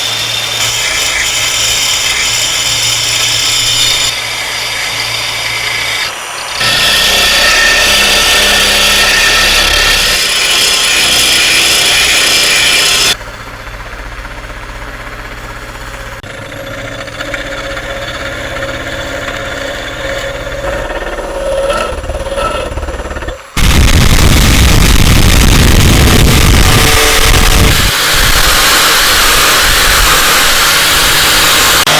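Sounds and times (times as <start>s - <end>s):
power tools running: 0.0s - 31.9s.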